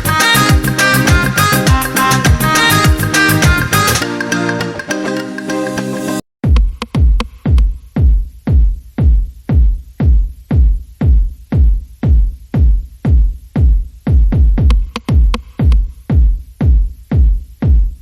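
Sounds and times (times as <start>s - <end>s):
heavy kick drum: 0.0s - 3.9s, 6.4s - 18.0s
electronic dance music: 0.0s - 6.2s.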